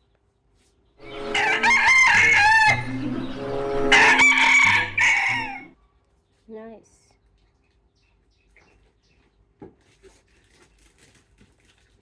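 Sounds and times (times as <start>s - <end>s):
rooster crowing: 1.0s - 5.7s.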